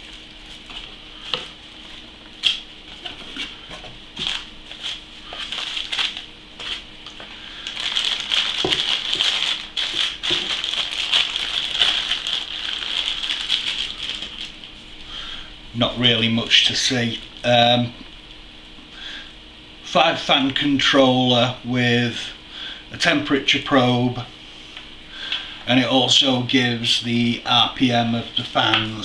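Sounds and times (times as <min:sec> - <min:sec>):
packaging rustling: 0:01.7 - 0:06.8, 0:07.6 - 0:14.9.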